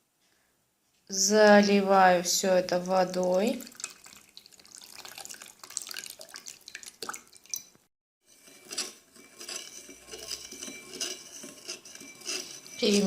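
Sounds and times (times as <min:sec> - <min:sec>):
water pouring and splashing: 0:03.1 - 0:07.9.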